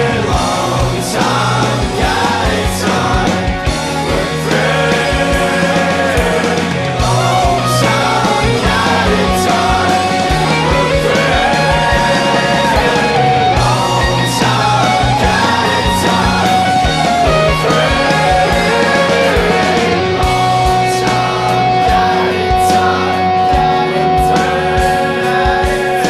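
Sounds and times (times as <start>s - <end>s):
rock song with singing: 0.0s - 26.0s.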